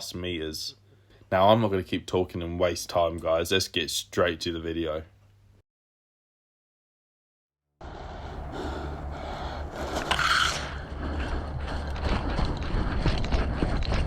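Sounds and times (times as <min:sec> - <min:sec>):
gear rustling and scraping: 0:09.6 - 0:14.0.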